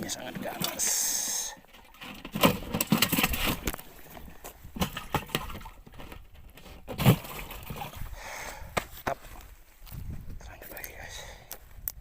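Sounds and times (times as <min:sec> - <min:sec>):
fish knocking and thumping: 0:01.6 - 0:08.1.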